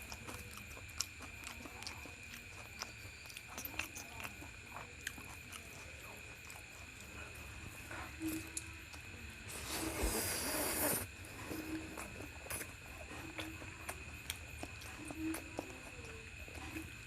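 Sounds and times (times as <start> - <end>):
wet chewing smacks: 0.0 - 17.0
loud breathy hiss: 9.5 - 11.1.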